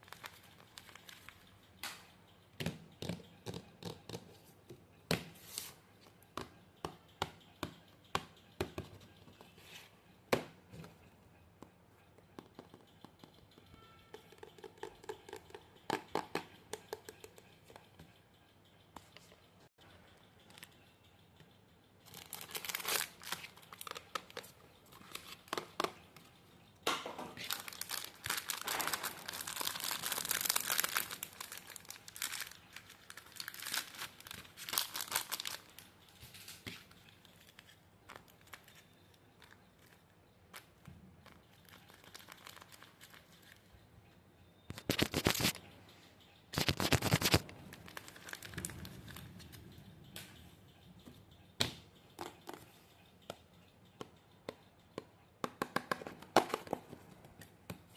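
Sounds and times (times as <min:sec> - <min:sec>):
paper crinkling and tearing: 0:46.6 - 0:47.4.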